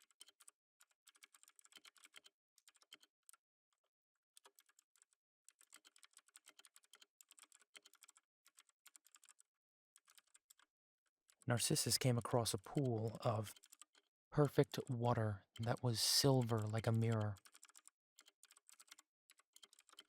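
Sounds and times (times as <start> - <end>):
keyboard typing: 4.4 - 9.4, 15.6 - 20.0.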